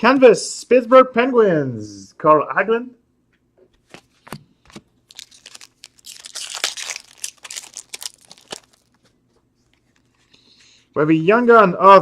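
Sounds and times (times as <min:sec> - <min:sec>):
foil wrapper crinkling and tearing: 0:05.0 - 0:10.3.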